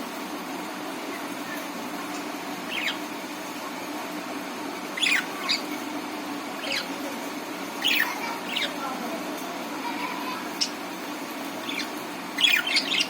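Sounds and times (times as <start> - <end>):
steady low hum: 0.0 - 13.0
budgerigar chirping: 2.7 - 3.0, 5.0 - 5.7, 6.6 - 6.9, 7.8 - 8.8, 10.6 - 10.8, 11.6 - 13.0.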